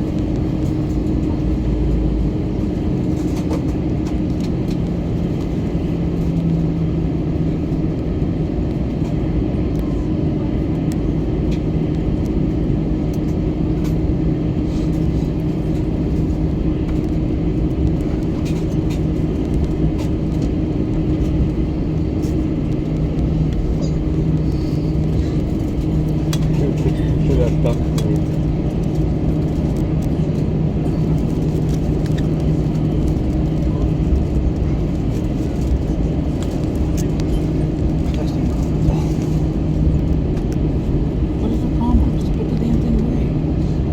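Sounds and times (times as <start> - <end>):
airplane cabin engine hum: 0.0 - 43.9.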